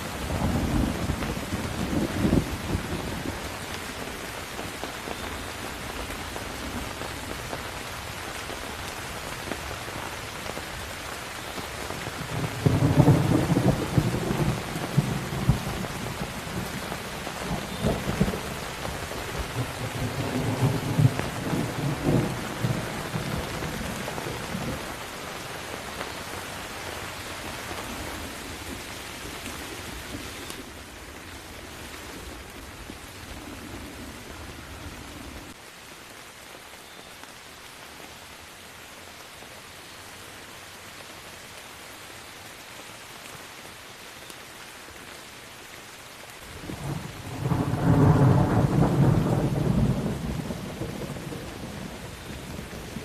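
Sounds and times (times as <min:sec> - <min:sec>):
thunder rumbling: 0:00.0 - 0:04.2, 0:12.2 - 0:25.1, 0:46.6 - 0:53.0
steady rain falling: 0:00.0 - 0:53.0.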